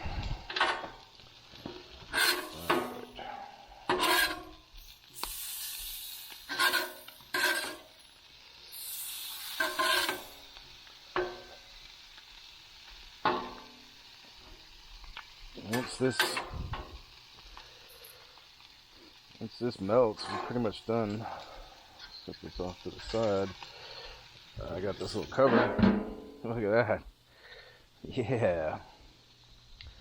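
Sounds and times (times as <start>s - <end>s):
food sizzling on hot plate: 0.0s - 30.0s
metal spatula scraping griddle: 1.7s - 4.6s, 5.2s - 8.0s, 8.7s - 10.4s, 20.2s - 20.8s.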